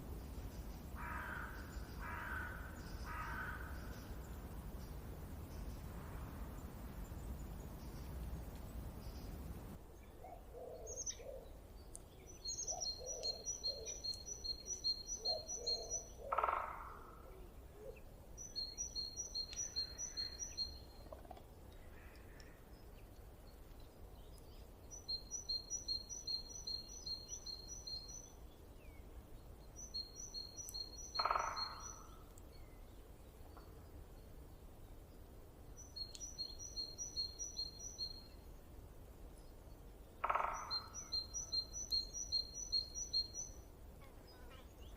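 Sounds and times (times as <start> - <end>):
faint low rumble: 2.7 - 10.1.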